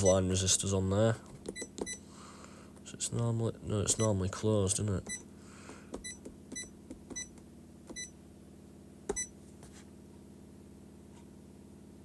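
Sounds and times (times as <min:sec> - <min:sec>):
keypad beeps: 0:01.5 - 0:02.0, 0:06.0 - 0:08.2, 0:09.1 - 0:09.3.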